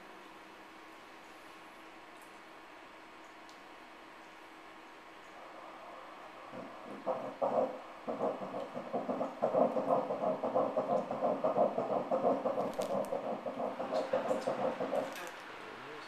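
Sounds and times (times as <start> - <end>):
fetal heartbeat whooshing pulses: 5.4 - 15.2.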